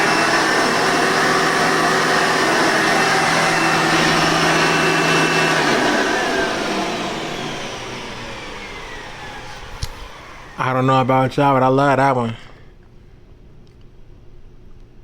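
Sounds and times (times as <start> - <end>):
vacuum cleaner motor spinning down: 0.0 - 12.0.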